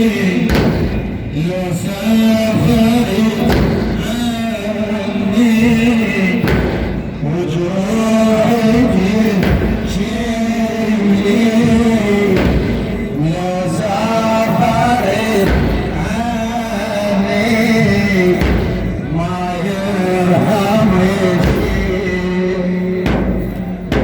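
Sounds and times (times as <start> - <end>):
man chanting religious recitation: 0.0 - 24.0.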